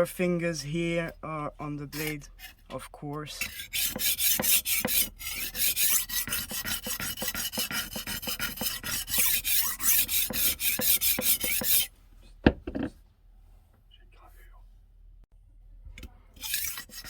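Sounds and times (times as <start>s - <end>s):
sharpener rasping against knife: 3.4s - 11.9s, 16.4s - 17.0s.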